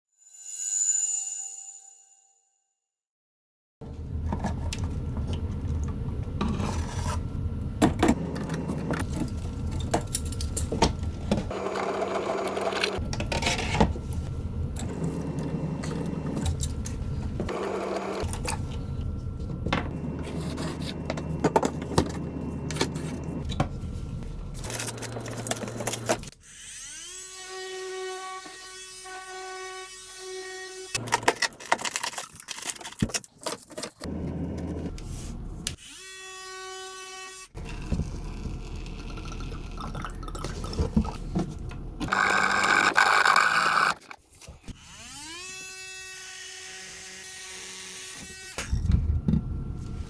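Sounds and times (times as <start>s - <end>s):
small power tool humming: 25.7s - 31.0s, 35.7s - 39.0s, 42.1s - 44.0s, 44.7s - 48.8s.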